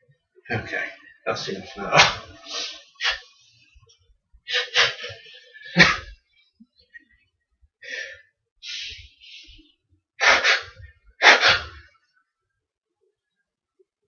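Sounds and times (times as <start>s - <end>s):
man sneezing: 4.5s - 6.2s, 10.2s - 11.9s
man gasping breaths: 7.8s - 9.6s.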